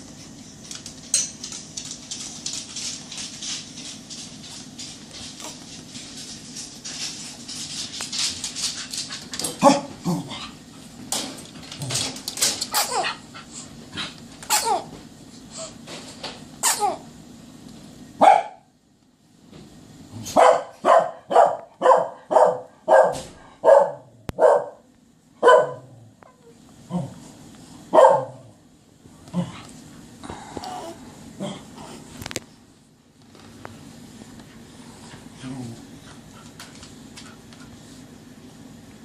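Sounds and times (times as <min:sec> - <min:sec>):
dog barking: 0:18.2 - 0:18.7, 0:20.3 - 0:26.0, 0:27.9 - 0:28.5.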